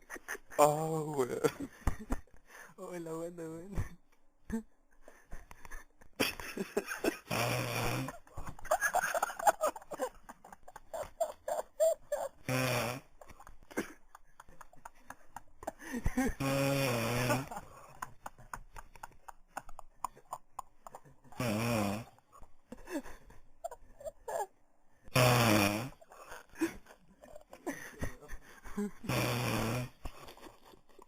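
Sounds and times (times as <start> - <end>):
man snoring: 7.1 - 8.3, 12.4 - 13.2, 16.2 - 17.6, 21.4 - 22.2, 25.1 - 26.0, 29.0 - 30.0.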